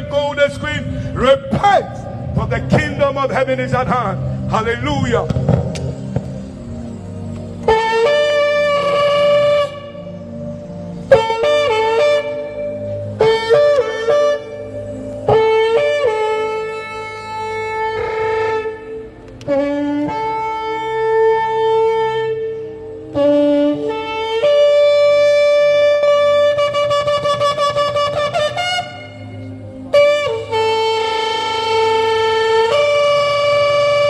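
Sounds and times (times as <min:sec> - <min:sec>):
shofar blasts: 0:07.6 - 0:34.0.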